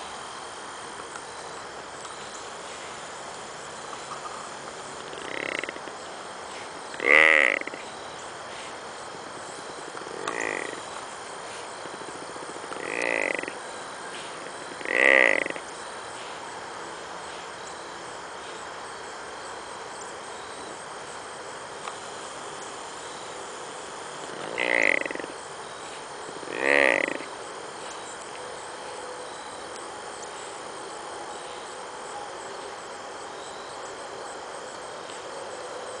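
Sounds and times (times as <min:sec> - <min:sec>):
deer snoring and whining: 0:05.0 - 0:05.9, 0:06.9 - 0:07.8, 0:10.0 - 0:15.7, 0:24.2 - 0:25.4, 0:26.3 - 0:27.4.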